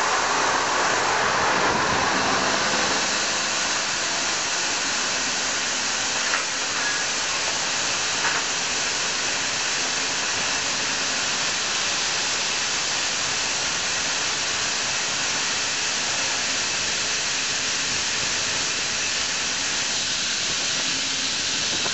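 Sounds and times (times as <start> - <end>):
grain dryer roaring: 0.0 - 21.9.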